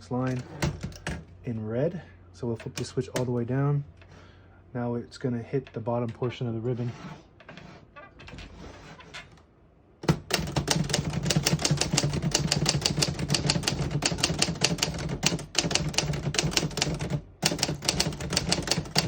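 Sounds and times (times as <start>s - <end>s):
typewriter keystrokes: 10.0s - 19.0s.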